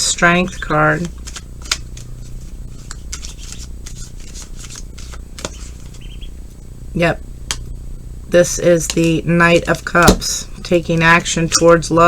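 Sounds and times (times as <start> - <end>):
steady low hum: 0.0 - 12.0
cards being shuffled: 0.5 - 6.1.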